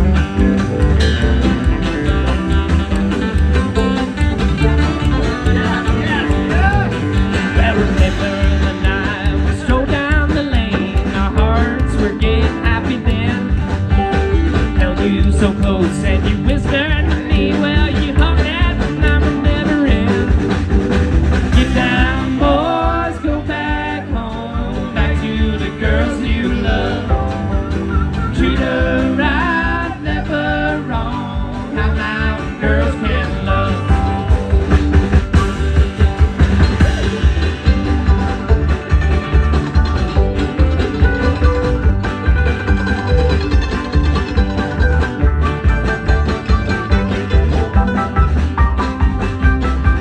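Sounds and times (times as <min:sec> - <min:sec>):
acoustic string band playing: 0:00.0 - 0:50.0.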